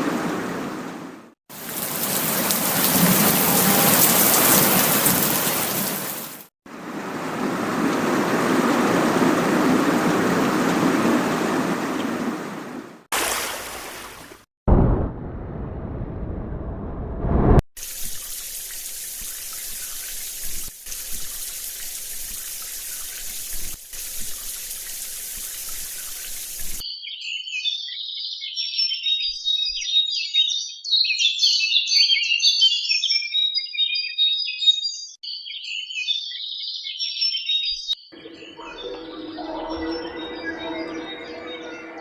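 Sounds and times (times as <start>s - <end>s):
running water hissing: 1.5s - 6.5s, 17.8s - 26.8s
birds chirping: 35.2s - 42.0s.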